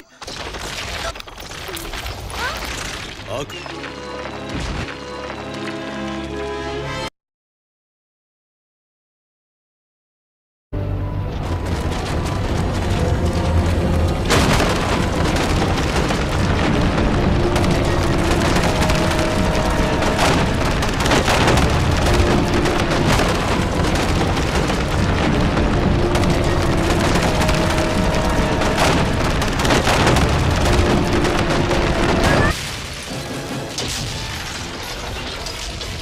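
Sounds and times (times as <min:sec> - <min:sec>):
rumble of crumbling rock: 0:00.2 - 0:05.0, 0:11.2 - 0:36.0
loud rock crashes: 0:11.3 - 0:36.0.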